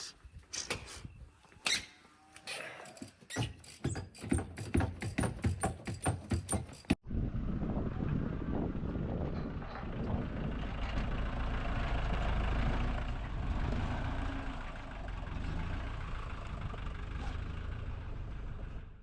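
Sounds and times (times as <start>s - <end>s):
vehicle engine idling: 8.0s - 19.0s.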